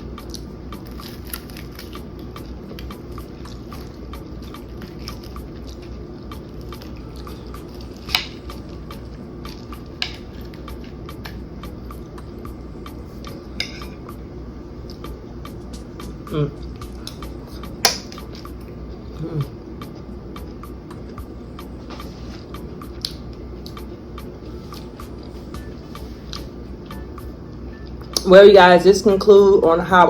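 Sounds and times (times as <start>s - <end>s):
low hum: 0.0s - 29.8s
chewing crispy fried chicken: 0.2s - 10.9s.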